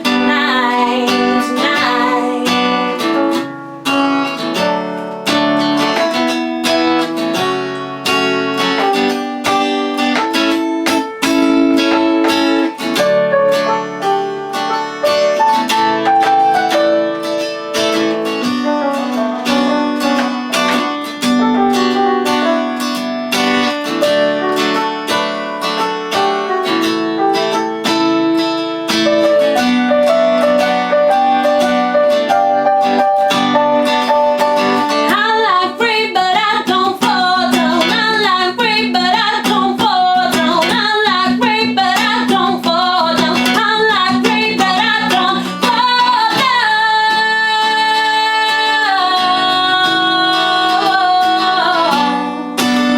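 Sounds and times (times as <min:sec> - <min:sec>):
wavering lead melody: 0:00.0 - 0:03.8
acoustic guitar playing: 0:00.0 - 0:52.9.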